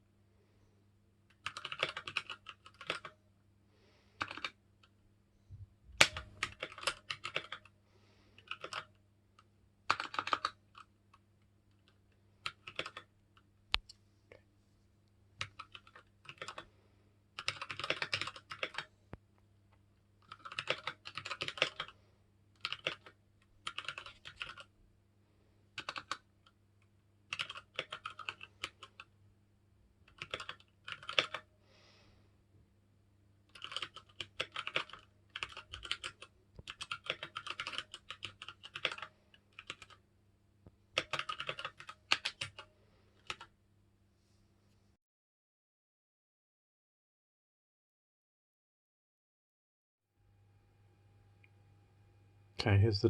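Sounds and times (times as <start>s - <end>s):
mechanical keyboard typing: 1.3s - 3.2s, 4.2s - 4.6s, 6.0s - 7.7s, 8.4s - 9.0s, 9.9s - 10.9s, 11.7s - 13.1s, 15.4s - 16.7s, 17.4s - 18.9s, 20.2s - 22.0s, 22.6s - 24.7s, 25.8s - 26.6s, 27.3s - 29.1s, 30.0s - 31.5s, 33.5s - 40.0s, 40.9s - 43.5s.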